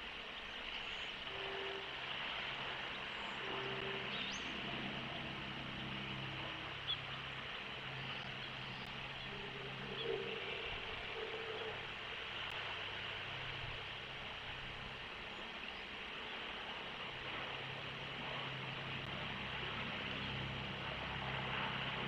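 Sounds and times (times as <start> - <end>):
surf: 0.0 - 22.0
wind: 0.0 - 22.0
faint low drone: 1.2 - 22.0
faint rising bird call: 3.0 - 12.6.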